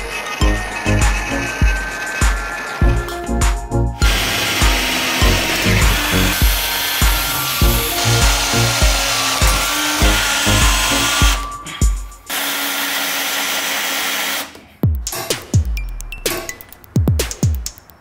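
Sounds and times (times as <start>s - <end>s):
music with deep beat: 0.0s - 12.3s, 14.8s - 18.0s
power tool running: 4.0s - 11.5s, 12.3s - 14.7s.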